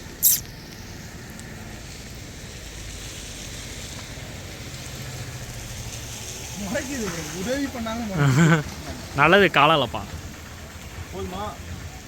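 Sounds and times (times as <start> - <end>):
short sharp hiss: 0.1 - 1.1.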